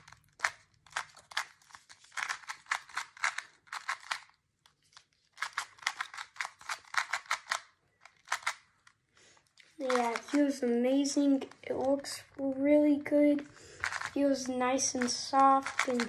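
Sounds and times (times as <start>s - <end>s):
puzzle cube layers clicking: 0.0s - 9.0s, 9.8s - 12.1s, 13.3s - 16.0s.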